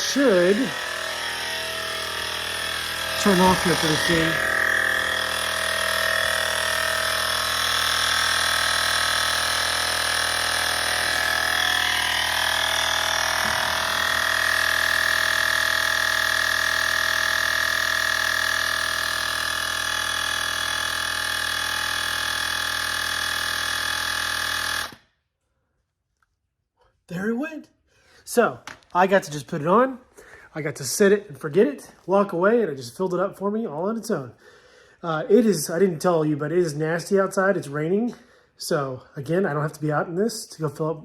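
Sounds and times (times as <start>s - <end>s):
electric air compressor running: 0.0s - 25.2s.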